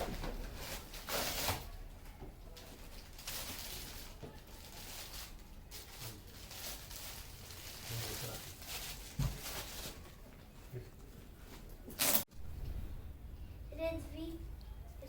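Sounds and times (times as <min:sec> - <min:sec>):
gift packaging rustling: 0:00.0 - 0:01.8, 0:02.6 - 0:10.2.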